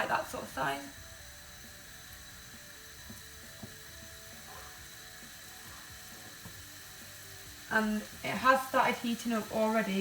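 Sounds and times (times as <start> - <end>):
oil sizzling in a frying pan: 0.0 - 10.0
faint oil pops: 3.0 - 6.7.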